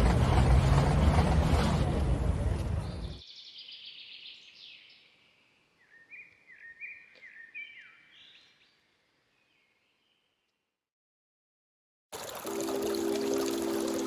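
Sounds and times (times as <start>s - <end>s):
faint birdsong trills and chirps: 2.8s - 10.6s.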